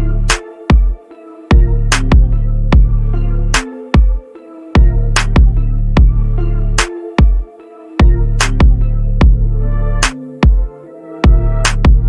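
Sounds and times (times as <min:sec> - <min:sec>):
electronic music with deep bass: 0:00.0 - 0:12.0
drum beat: 0:00.7 - 0:03.0, 0:04.0 - 0:04.2, 0:04.8 - 0:06.2, 0:07.2 - 0:09.4, 0:10.4 - 0:12.0.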